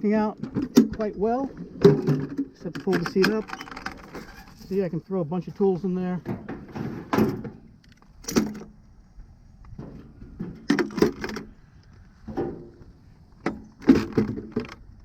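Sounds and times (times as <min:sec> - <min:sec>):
metal tools clanking in box: 0:01.9 - 0:04.7.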